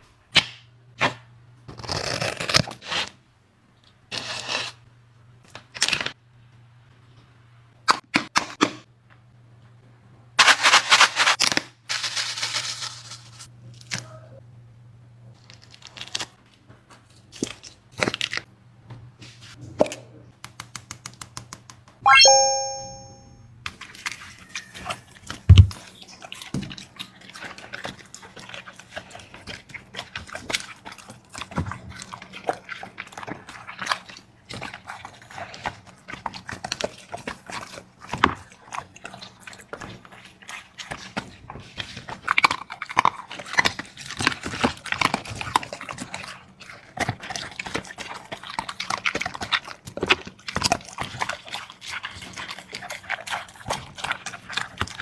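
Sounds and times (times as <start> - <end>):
dog crunching and slurping food: 4.1 - 4.7, 10.4 - 13.5, 15.4 - 16.4, 17.2 - 18.5, 23.7 - 55.0
loud thump: 25.5 - 25.8.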